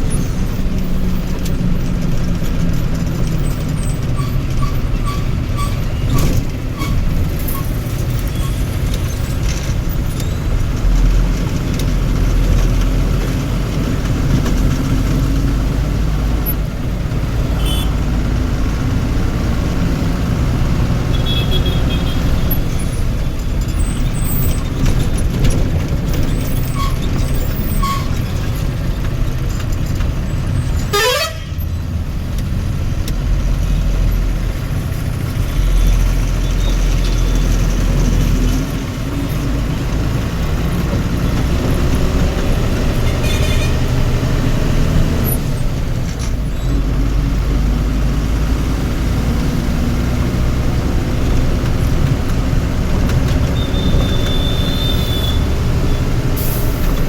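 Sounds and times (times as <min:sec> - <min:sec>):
short horn toots: 0:17.6 - 0:18.0, 0:53.6 - 0:55.6.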